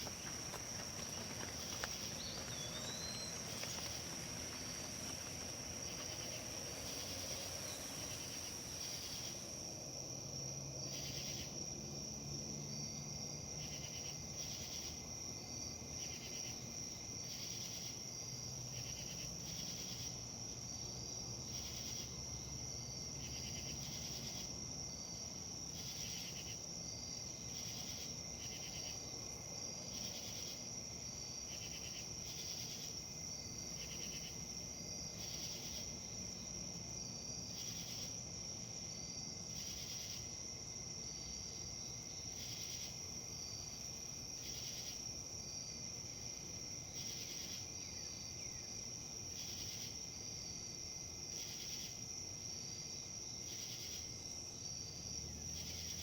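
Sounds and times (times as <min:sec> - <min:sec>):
wind rustle: 0:00.0 - 0:10.4
insects trilling: 0:00.0 - 0:15.0, 0:18.8 - 0:56.0
insect chirp: 0:00.0 - 0:56.0.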